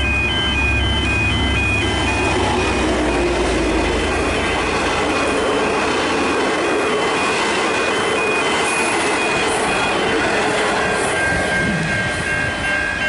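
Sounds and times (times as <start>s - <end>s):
short high ringing tones: 0.0s - 5.4s
train wheel and rail noise: 0.0s - 13.0s.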